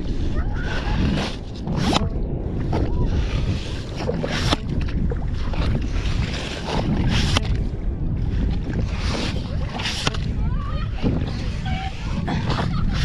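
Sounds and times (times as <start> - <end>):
wind rumbling on microphone: 0.0 - 13.0
pump squelching wet sand: 5.6 - 7.6, 8.8 - 10.3.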